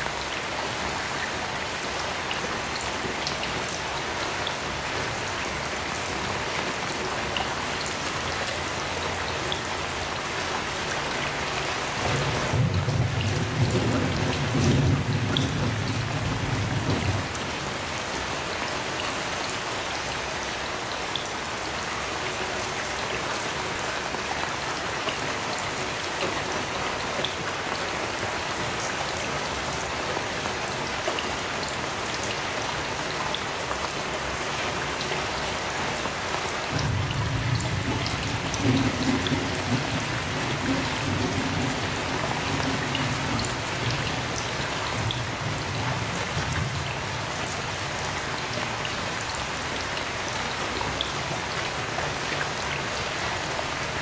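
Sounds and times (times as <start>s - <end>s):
heavy rain falling: 0.0s - 54.0s
low thunder rumble: 36.7s - 44.4s.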